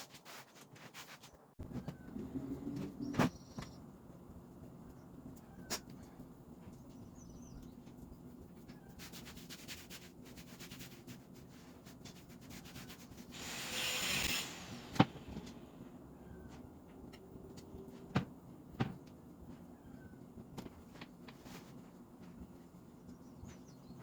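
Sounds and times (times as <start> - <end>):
hiss: 13.3 - 15.5.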